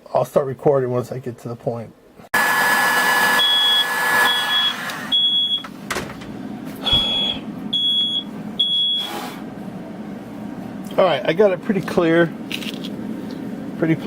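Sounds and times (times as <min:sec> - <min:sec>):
smoke alarm beeping: 0:03.1 - 0:05.7, 0:06.8 - 0:09.1.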